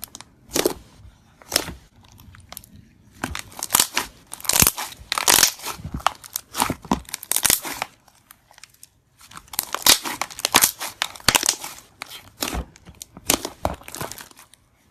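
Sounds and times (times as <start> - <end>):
crunchy slime squeezed by hand: 3.2 - 8.1, 9.3 - 14.5.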